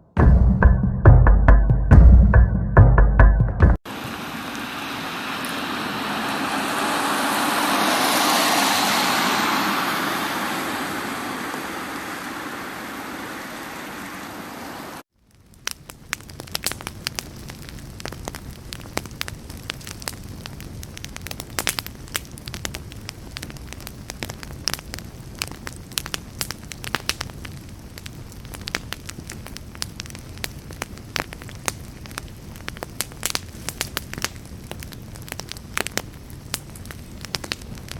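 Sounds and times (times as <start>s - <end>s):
broad rushing noise: 3.9s - 15.0s
crackling with sharp pops: 15.1s - 37.9s.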